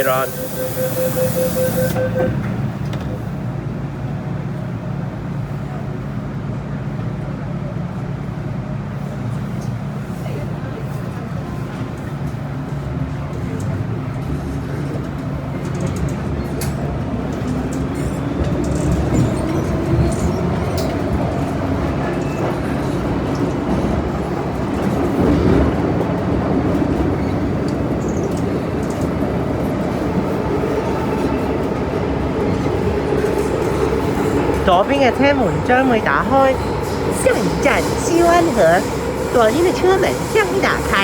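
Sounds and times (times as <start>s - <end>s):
train wheels rumbling on track: 0.0s - 41.0s.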